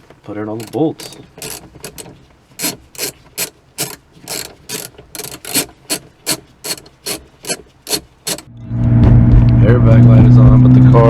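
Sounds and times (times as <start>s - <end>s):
ratchet wrench clicking: 0.6s - 8.5s.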